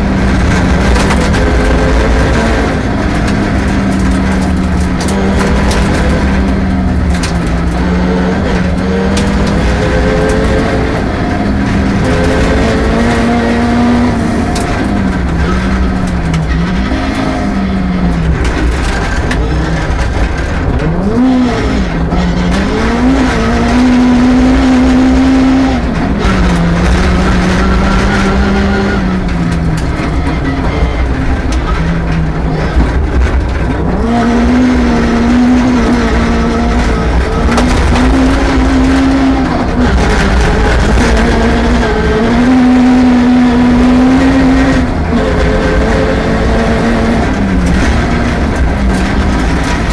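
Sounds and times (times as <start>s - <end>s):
rally car engine revving: 0.0s - 49.9s.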